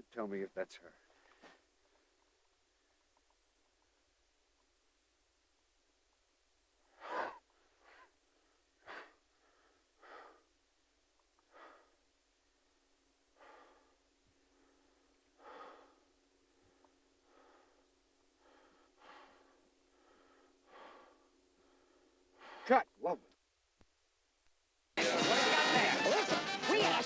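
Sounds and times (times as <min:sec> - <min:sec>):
heavy breathing: 0:06.8 - 0:10.7, 0:11.4 - 0:22.9
man gasping: 0:13.4 - 0:17.8, 0:18.4 - 0:22.8.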